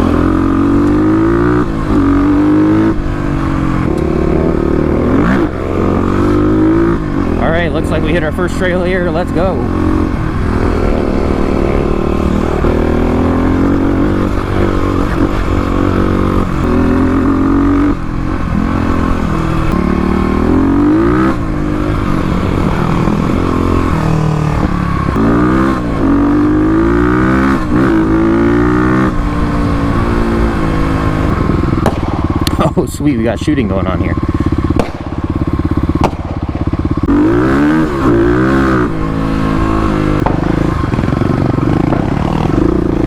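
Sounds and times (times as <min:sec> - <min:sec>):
dirt bike engine revving: 0:00.0 - 0:43.0.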